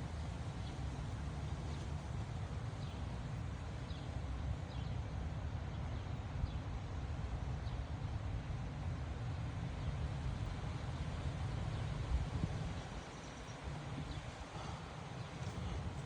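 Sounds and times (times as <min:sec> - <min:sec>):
wind buffeting microphone: 0:10.4 - 0:16.0.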